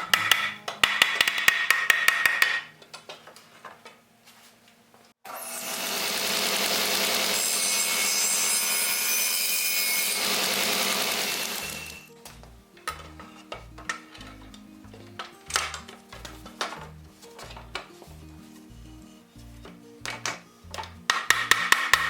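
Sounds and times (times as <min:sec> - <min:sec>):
power tool running: 0:05.3 - 0:12.1.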